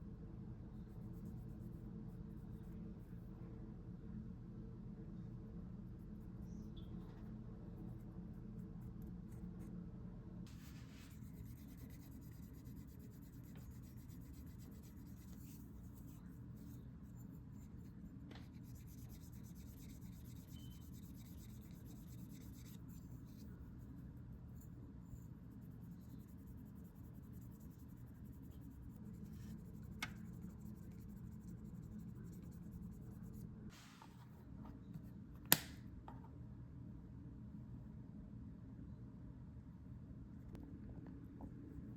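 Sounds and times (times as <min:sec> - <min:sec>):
steady low hum: 0:00.0 - 0:41.9
tool rubbing on leather: 0:10.5 - 0:23.5.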